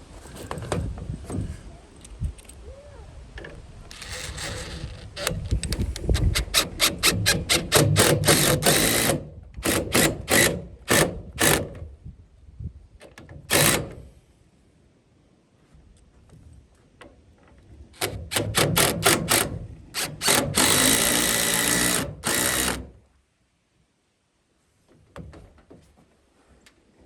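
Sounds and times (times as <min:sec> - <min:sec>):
wind rumble on microphone: 0:00.0 - 0:07.3, 0:11.8 - 0:13.0
tool making mechanical clicks: 0:03.9 - 0:11.8, 0:13.0 - 0:14.0, 0:18.0 - 0:23.0.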